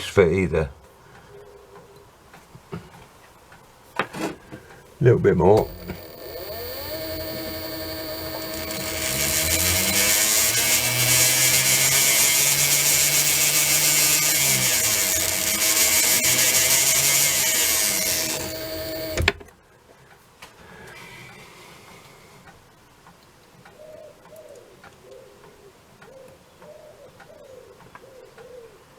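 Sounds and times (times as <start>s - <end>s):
stone hissing against spinning wire: 5.6s - 19.2s
small lathe motor humming: 5.6s - 19.4s.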